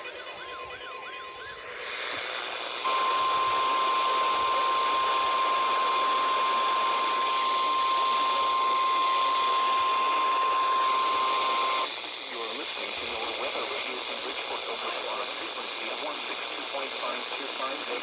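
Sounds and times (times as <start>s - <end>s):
steady alarm tone: 0.0s - 11.9s
radio static hiss: 0.0s - 18.0s.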